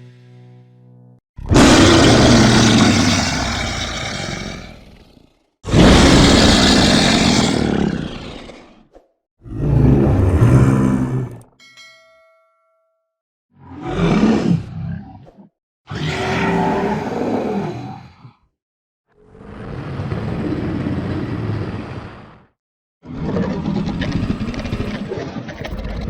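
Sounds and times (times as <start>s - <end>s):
dinosaur roars: 1.4s - 8.8s, 9.4s - 11.5s, 13.6s - 18.4s, 19.1s - 26.0s.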